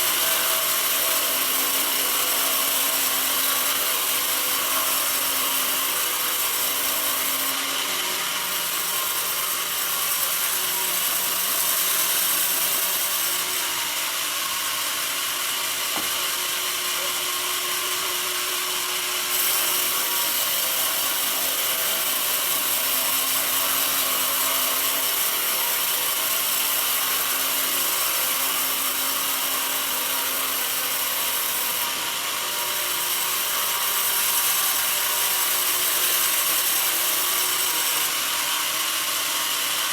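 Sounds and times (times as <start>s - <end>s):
band saw cutting log: 0.0s - 39.9s.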